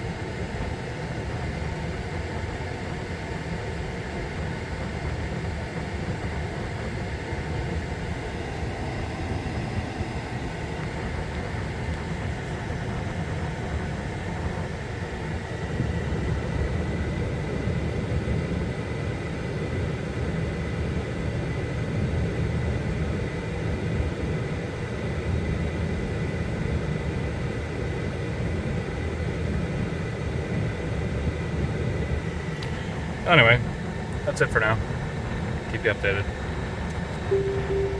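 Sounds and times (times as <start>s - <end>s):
steady mechanical running noise: 0.0s - 37.9s
faint high whine: 37.3s - 37.9s.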